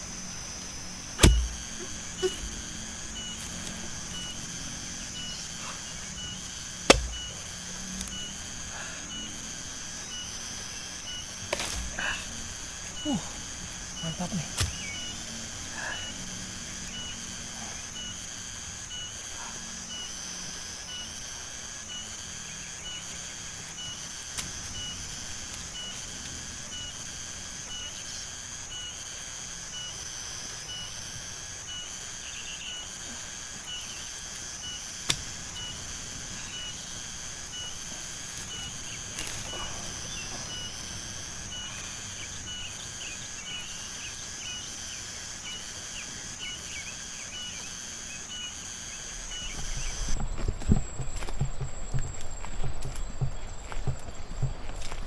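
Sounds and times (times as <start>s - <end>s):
insects shrilling: 0.0s - 55.0s
pulsing insect chirp: 0.0s - 55.0s
sharp clicks: 0.4s - 13.1s, 29.7s - 44.7s.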